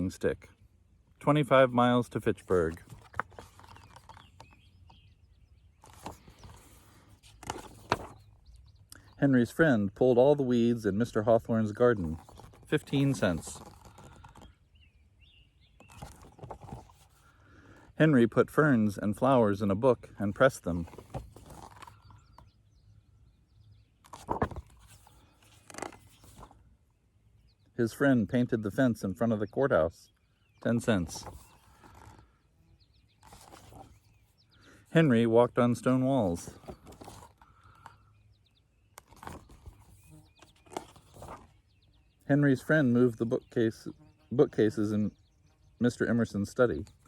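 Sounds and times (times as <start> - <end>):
faint bird chirps: 12.1 - 17.9, 29.1 - 35.2, 35.8 - 47.0.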